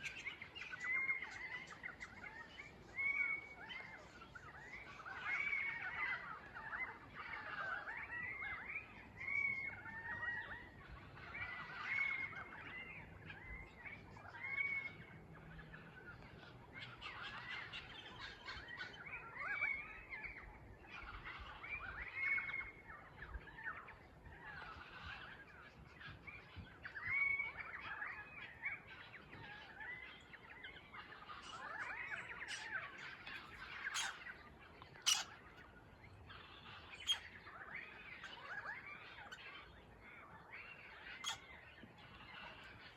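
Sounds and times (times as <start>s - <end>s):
birds calling: 0.0s - 42.9s
sharp high bird calls: 27.0s - 42.9s.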